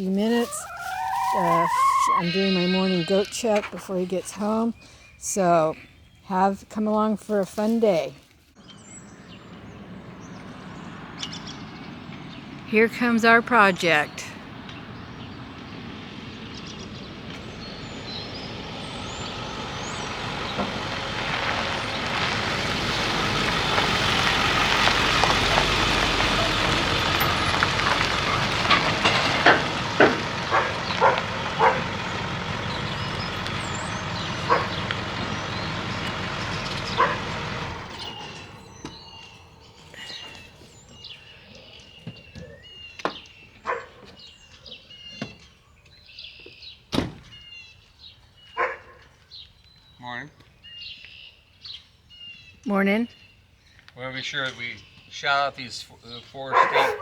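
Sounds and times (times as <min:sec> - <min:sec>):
birds chirping: 0:00.0 - 0:57.0
truck engine and tyre noise: 0:08.5 - 0:45.8, 0:54.3 - 0:57.0.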